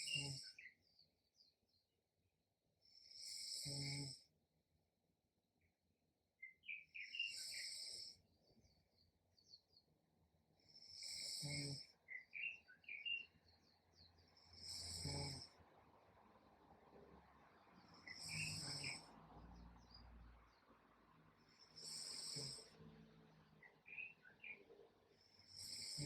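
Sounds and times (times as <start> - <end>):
faint snoring with rattle: 0.0 - 0.6, 2.9 - 4.3, 7.2 - 8.2, 10.6 - 12.0, 14.4 - 15.6, 17.9 - 19.1, 21.4 - 26.0.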